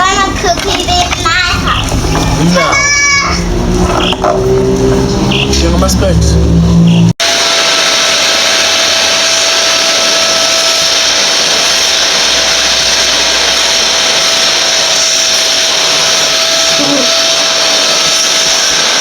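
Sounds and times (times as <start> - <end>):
vacuum cleaner running: 0.0 - 19.0.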